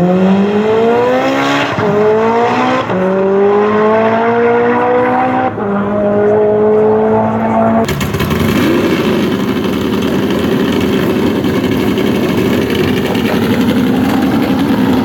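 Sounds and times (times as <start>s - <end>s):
loud car engine idling: 7.9s - 15.0s.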